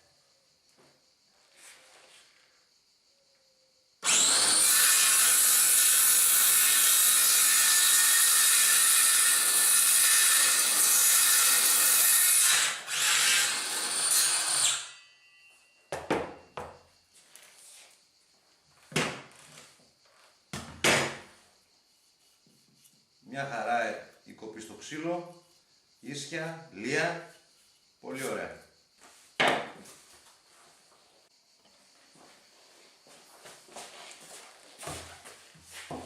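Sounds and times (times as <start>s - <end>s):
circular saw cutting wood: 4.0s - 15.0s.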